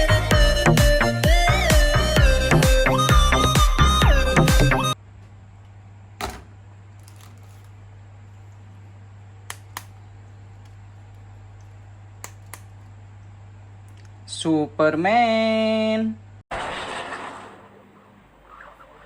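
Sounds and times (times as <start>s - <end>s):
steady low hum: 5.0s - 16.4s.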